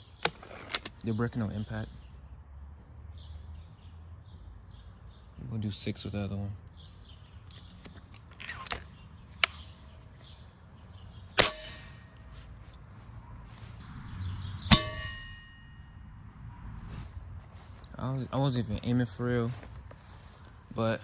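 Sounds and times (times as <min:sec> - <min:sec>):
air rifle shots: 0:11.3 - 0:12.2
pellets striking ringing metal pan: 0:14.7 - 0:15.8.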